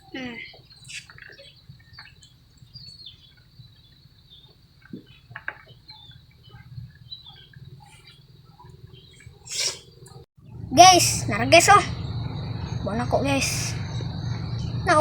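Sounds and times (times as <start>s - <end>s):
low steady rumble: 10.4s - 15.0s.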